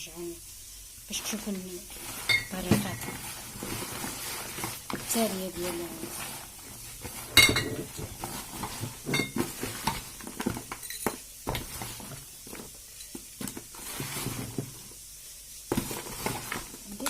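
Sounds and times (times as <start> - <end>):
kitchenware ringing clink: 2.3 - 2.5, 7.4 - 7.9, 10.7 - 11.1.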